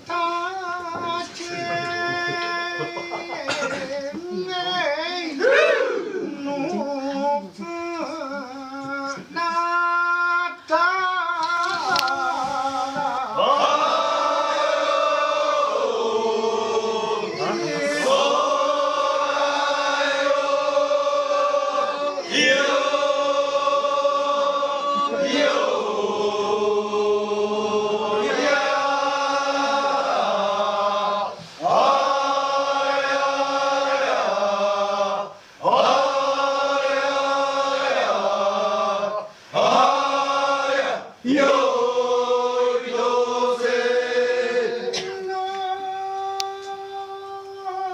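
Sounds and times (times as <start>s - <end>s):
group of voices singing: 0.0s - 47.9s
person singing solo: 44.8s - 47.9s.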